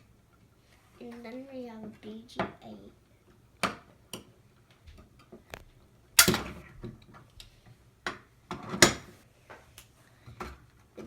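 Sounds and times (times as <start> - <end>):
fire alarm pull station clicks: 6.2 - 6.5.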